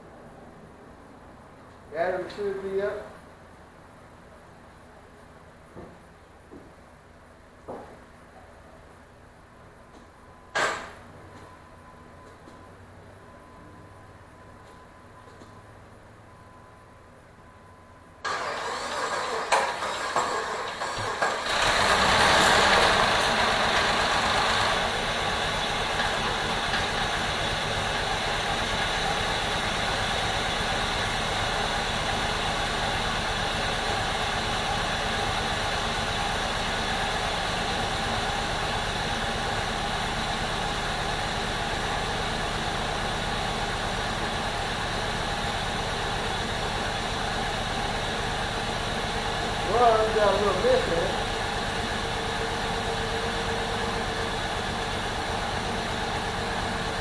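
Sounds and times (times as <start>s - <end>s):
starter motor cranking: 18.2s - 29.7s
car engine revving and idling: 18.6s - 57.0s.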